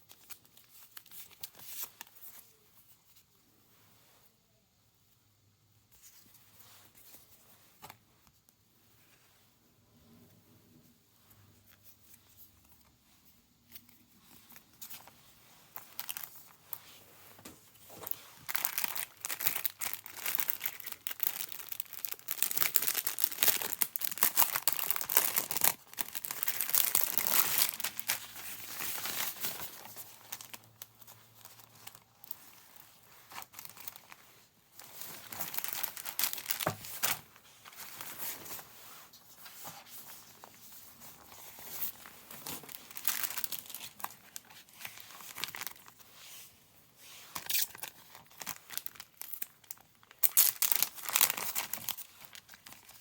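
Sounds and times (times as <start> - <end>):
plastic packaging crinkling and tearing: 13.7 - 16.9, 17.8 - 46.0, 47.2 - 53.0.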